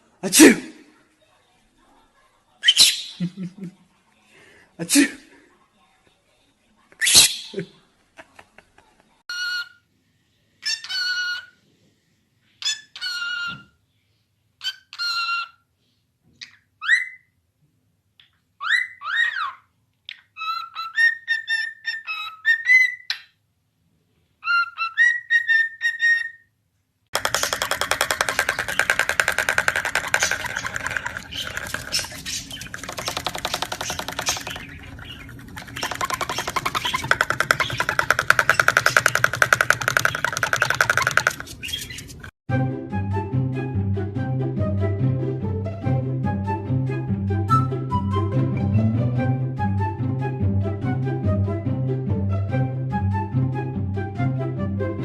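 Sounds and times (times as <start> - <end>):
parrot whistling and calling: 20.2 - 23.3, 24.4 - 26.4, 27.2 - 42.3
background music: 42.5 - 55.0.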